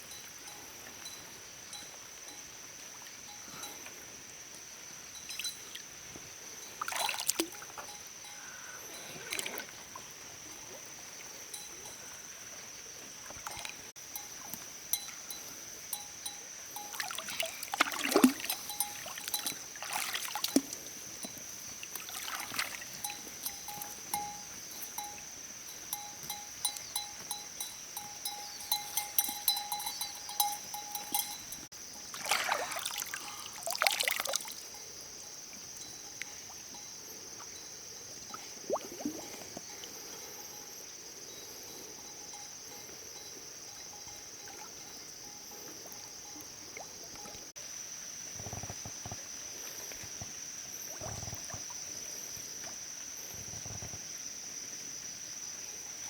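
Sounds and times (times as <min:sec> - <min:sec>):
water splashing and sloshing: 0:04.8 - 0:28.0, 0:28.6 - 0:34.8, 0:35.5 - 0:40.4.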